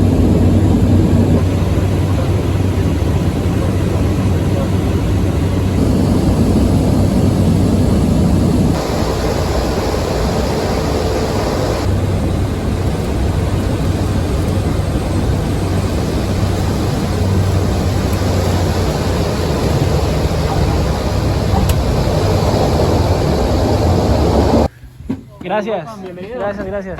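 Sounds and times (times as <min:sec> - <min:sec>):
low hum: 0:00.0 - 0:24.8
airplane engines droning: 0:00.0 - 0:25.1.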